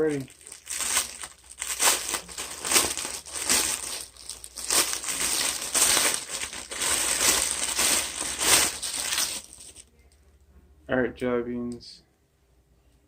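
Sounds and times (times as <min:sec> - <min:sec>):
plastic packaging crinkling: 0:00.0 - 0:09.9.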